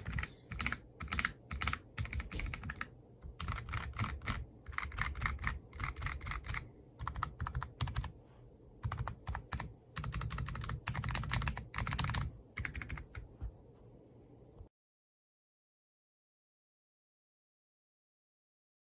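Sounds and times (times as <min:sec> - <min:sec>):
mechanical keyboard typing: 0:00.0 - 0:08.2, 0:08.8 - 0:13.3.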